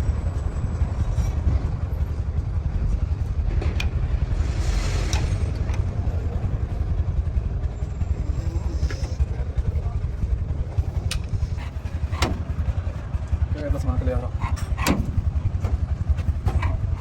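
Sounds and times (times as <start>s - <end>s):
low engine rumble: 0.0s - 17.0s
faint clicks and knocks: 10.8s - 13.4s, 14.4s - 17.0s.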